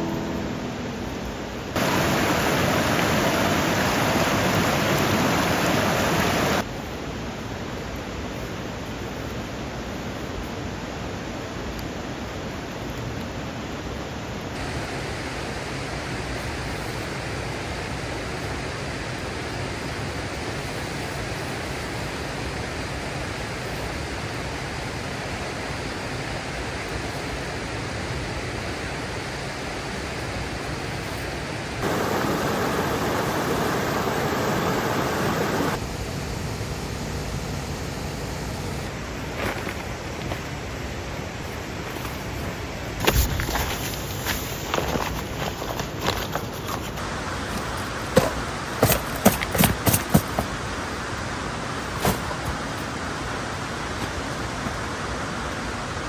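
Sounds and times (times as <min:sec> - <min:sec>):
stream rushing over rocks: 0:01.7 - 0:06.7, 0:14.6 - 0:20.4, 0:31.4 - 0:35.8, 0:38.3 - 0:56.0.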